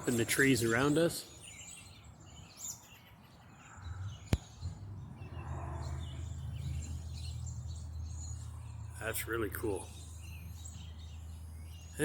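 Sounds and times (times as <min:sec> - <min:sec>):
songbirds chirping faintly: 0:00.0 - 0:12.0.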